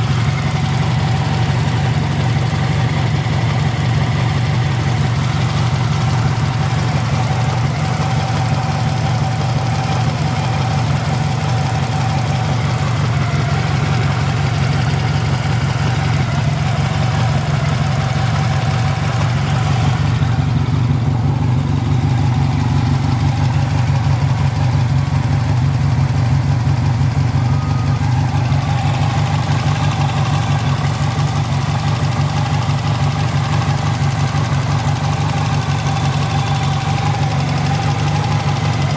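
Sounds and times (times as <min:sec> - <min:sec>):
abnormal mechanical engine noise: 0:00.0 - 0:38.9
motorcycle engine idling: 0:00.0 - 0:38.9.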